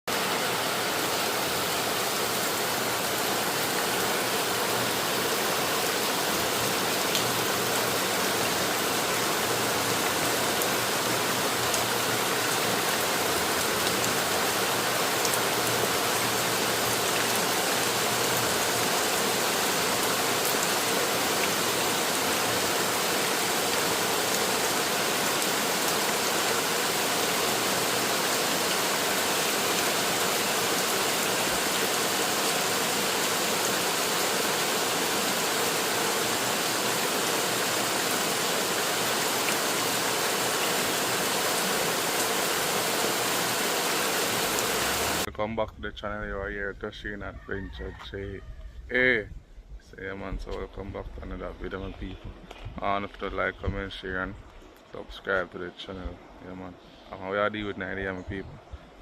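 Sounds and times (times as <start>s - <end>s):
heavy rain hissing: 0.1s - 45.3s.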